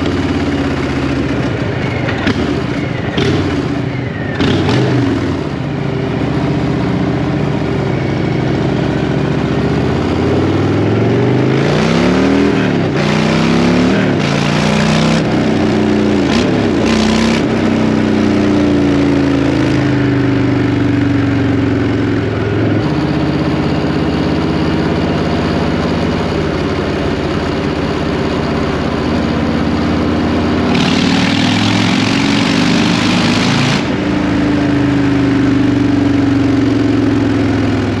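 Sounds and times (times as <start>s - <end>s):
loud motorcycle engine: 0.0s - 38.0s.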